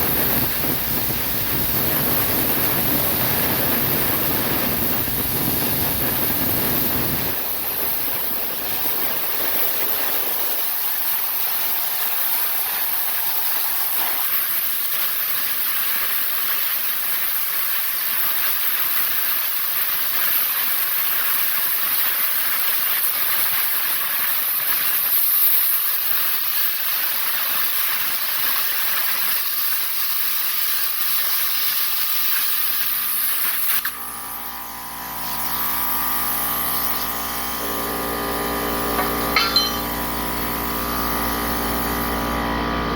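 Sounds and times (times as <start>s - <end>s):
plasma cutter hissing: 0.0s - 42.4s.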